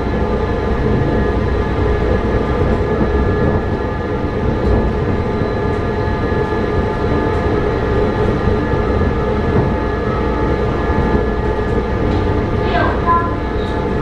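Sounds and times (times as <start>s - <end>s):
metro train rumbling: 0.0s - 14.0s
steady hum of held tones: 0.0s - 14.0s.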